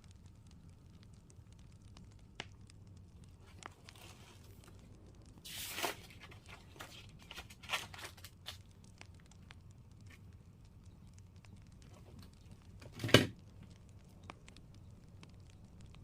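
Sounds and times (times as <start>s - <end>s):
packaging rustling: 3.4s - 8.7s
light clicks and taps: 6.2s - 16.0s.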